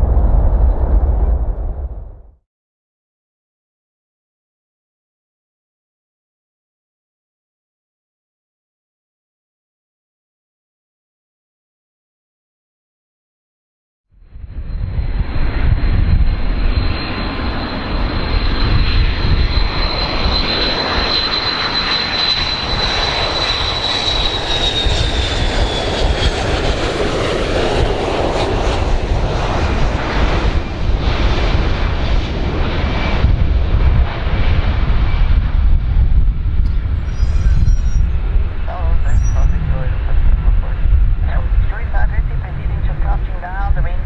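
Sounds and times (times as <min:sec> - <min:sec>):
airplane engines rumbling: 0:00.0 - 0:02.3, 0:14.2 - 0:44.0
high engine whine: 0:14.3 - 0:44.0.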